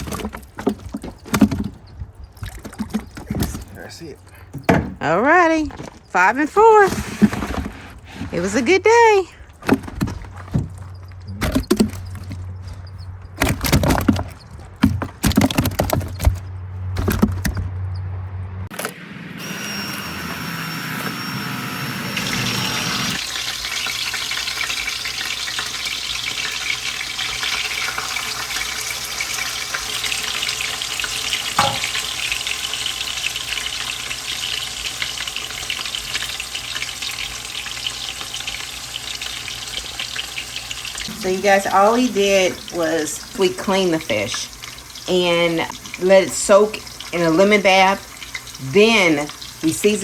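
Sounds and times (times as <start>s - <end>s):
knocks and clatter: 9.5s - 18.0s
fish sizzling in oil: 22.0s - 50.0s.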